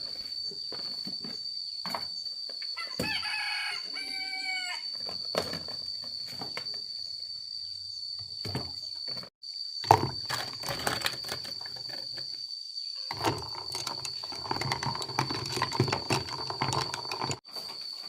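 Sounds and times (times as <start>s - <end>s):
high-pitched insect drone: 0.0s - 18.0s
rapid clicking and scraping: 13.1s - 17.4s.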